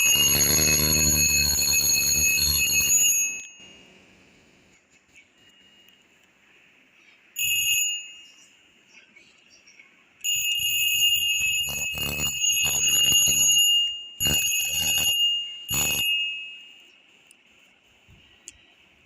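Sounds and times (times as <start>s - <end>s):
alarm clock rattle: 0.0s - 3.6s, 10.3s - 16.4s
alarm clock ringing: 0.0s - 3.9s, 7.4s - 8.4s, 10.2s - 16.9s.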